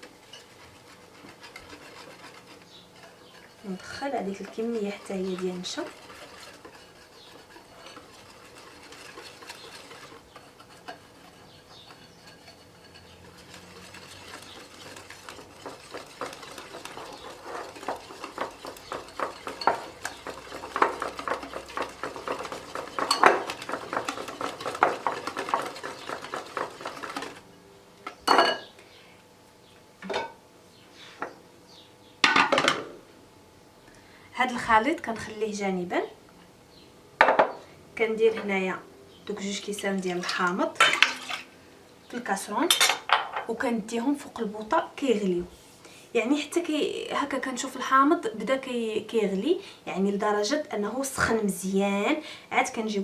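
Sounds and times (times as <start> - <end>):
hand whisk clicking against bowl: 12.2 - 27.4.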